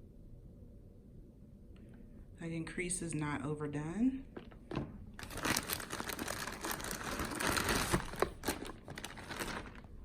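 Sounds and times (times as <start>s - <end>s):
plastic bag crinkling: 4.4s - 10.0s.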